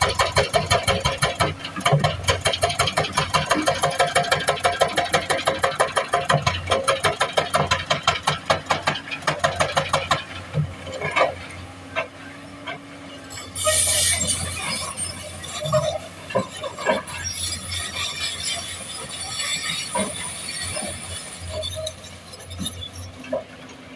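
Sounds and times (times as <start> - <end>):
excavator engine running: 0.0 - 13.1.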